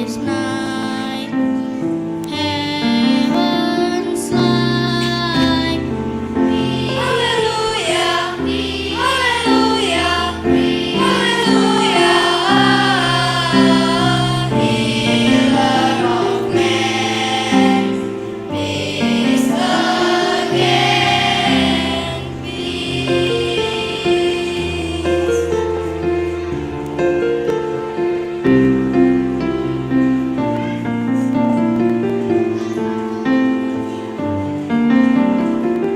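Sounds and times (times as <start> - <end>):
held accompaniment notes: 0.0 - 35.9
children's choir singing: 2.2 - 30.3.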